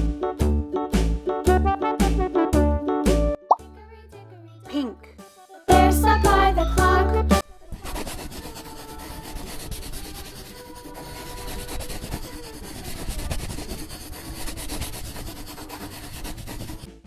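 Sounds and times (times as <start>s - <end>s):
scribbling on paper: 7.8s - 16.9s.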